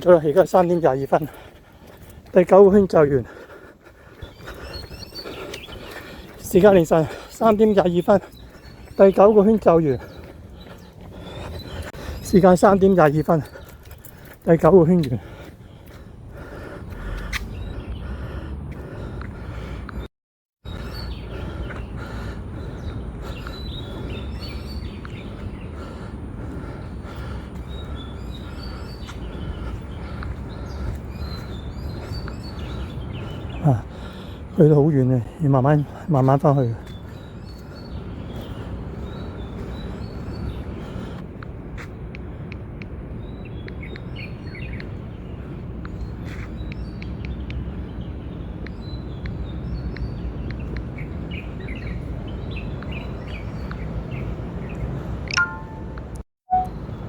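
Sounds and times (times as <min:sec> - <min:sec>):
high chirps: 0:55.3 - 0:56.7.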